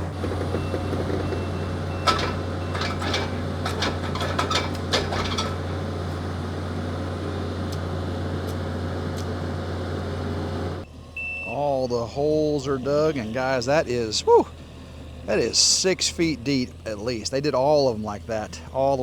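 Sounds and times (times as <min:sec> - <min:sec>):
sharp knocks and clanks: 0:00.0 - 0:06.4
construction machine engine running: 0:00.0 - 0:19.0.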